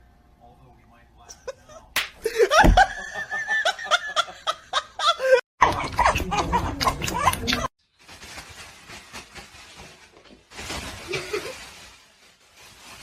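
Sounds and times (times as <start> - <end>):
people laughing and snickering: 1.3 - 7.7.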